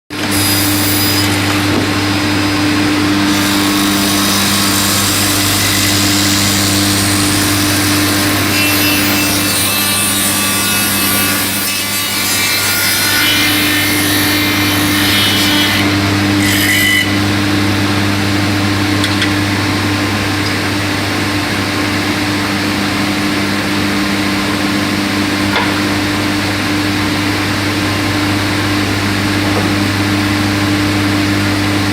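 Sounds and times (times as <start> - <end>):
machine cutting wood: 0.2 - 17.8.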